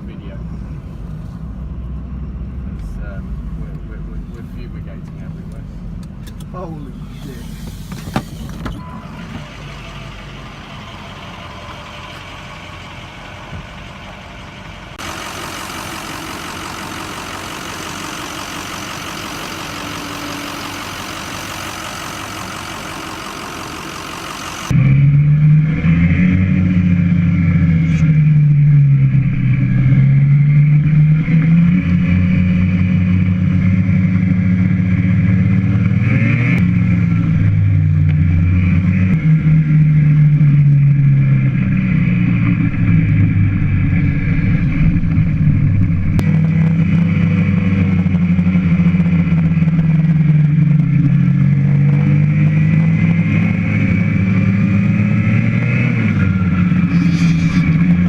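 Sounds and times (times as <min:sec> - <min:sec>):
snowmobile engine revving: 0:15.0 - 0:58.0.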